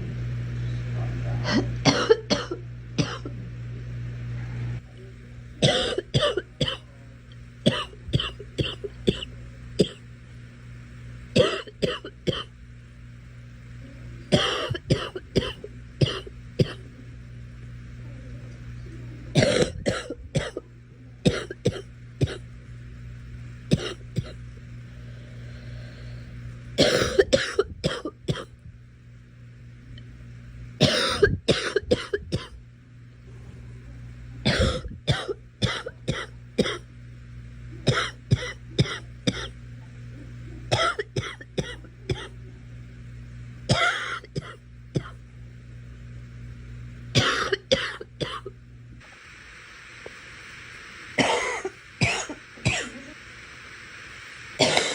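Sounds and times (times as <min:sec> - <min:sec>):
steady low hum: 0:00.0 - 0:54.9
girl coughing: 0:01.4 - 0:03.3, 0:05.6 - 0:06.8, 0:07.7 - 0:10.0, 0:11.4 - 0:12.5, 0:14.3 - 0:16.8, 0:19.4 - 0:20.6, 0:21.2 - 0:22.4, 0:23.7 - 0:24.4, 0:26.8 - 0:28.5, 0:30.8 - 0:32.6, 0:34.4 - 0:36.8, 0:37.9 - 0:39.6, 0:40.7 - 0:42.3, 0:43.7 - 0:45.2, 0:47.2 - 0:48.5, 0:51.2 - 0:53.0, 0:54.6 - 0:54.9.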